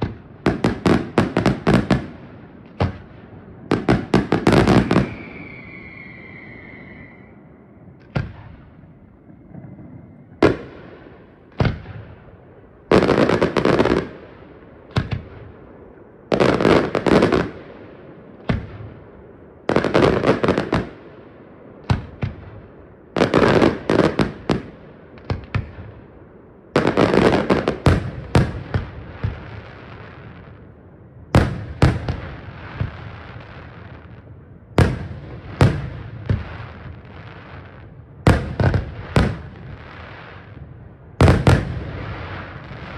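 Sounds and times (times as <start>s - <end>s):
fireworks bursting with bangs: 0.0s - 7.3s, 8.0s - 26.2s, 26.8s - 42.9s
rumble after fireworks: 0.0s - 42.9s.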